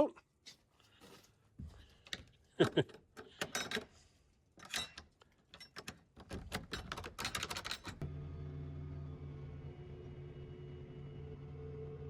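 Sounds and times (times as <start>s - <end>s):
irregular clicks and knocks: 1.9s - 4.0s, 4.6s - 8.0s.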